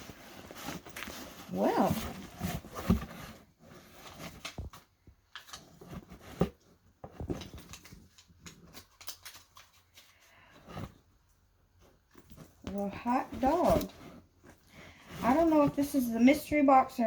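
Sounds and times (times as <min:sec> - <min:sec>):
packaging rustling and clicking: 0:00.0 - 0:10.2.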